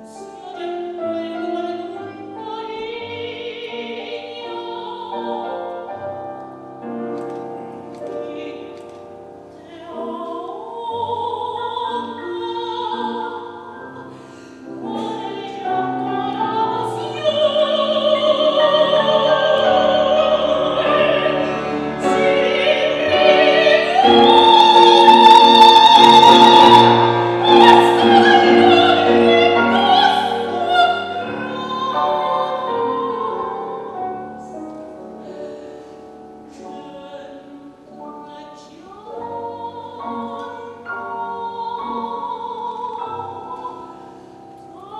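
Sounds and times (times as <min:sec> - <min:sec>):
piano accompaniment: 0:00.0 - 0:44.9
operatic singing: 0:14.6 - 0:35.7.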